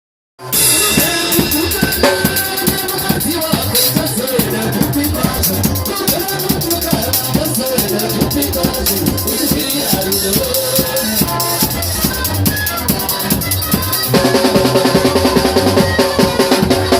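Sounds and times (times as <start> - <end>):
fast drum beat: 0.4 - 16.9
sliding melodic line: 0.6 - 4.9.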